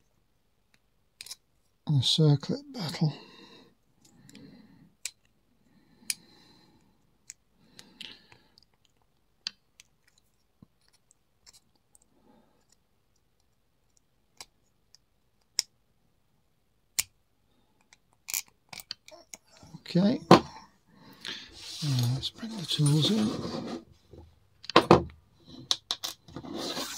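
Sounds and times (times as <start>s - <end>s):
soft scraping: 21.4s - 24.1s, 26.3s - 26.9s.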